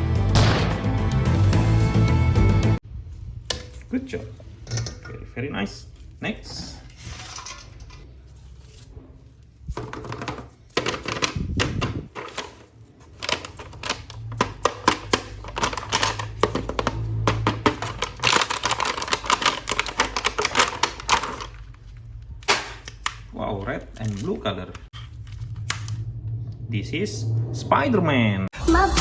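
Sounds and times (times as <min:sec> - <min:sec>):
background music: 0:00.0 - 0:02.8.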